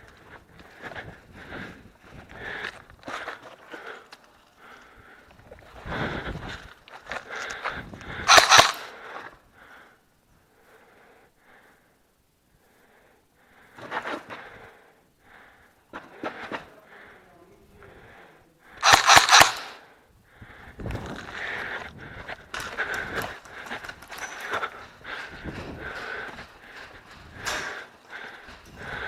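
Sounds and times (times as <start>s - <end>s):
airsoft rifle rapid shots: 8.2s - 9.0s, 18.8s - 19.9s.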